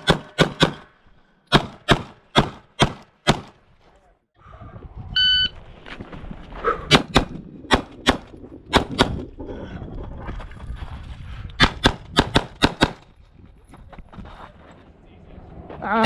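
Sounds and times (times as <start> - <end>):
pistol shots: 1.5 - 3.6.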